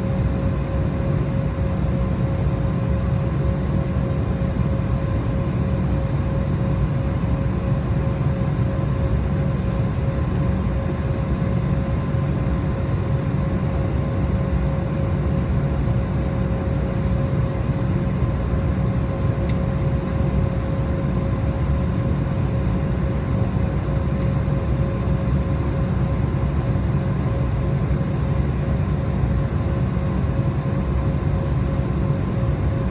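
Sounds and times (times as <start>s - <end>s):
airliner cabin engine drone: 0.0s - 32.9s.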